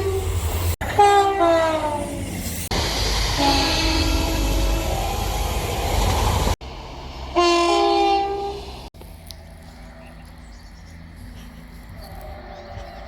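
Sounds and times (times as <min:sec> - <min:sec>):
passing train: 0:00.0 - 0:13.0
two-tone train horn: 0:00.9 - 0:02.1, 0:03.4 - 0:05.2, 0:07.4 - 0:08.7.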